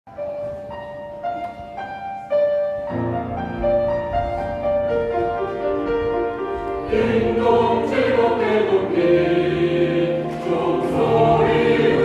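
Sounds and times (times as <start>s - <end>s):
piano playing: 0.1s - 12.0s.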